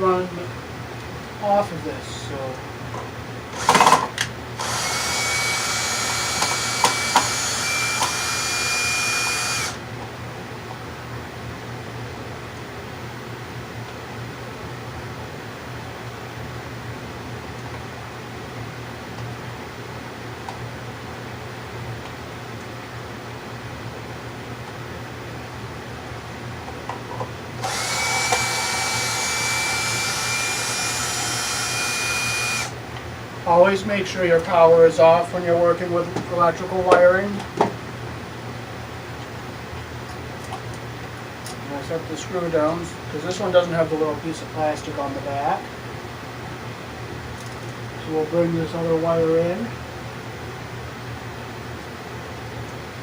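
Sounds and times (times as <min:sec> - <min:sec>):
power drill motor whine: 0:03.5 - 0:09.9, 0:27.6 - 0:32.8.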